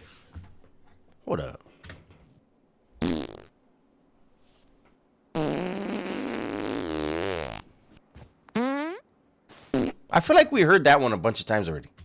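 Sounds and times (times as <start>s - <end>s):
fart: 3.0s - 3.5s, 5.4s - 7.8s, 8.5s - 10.0s.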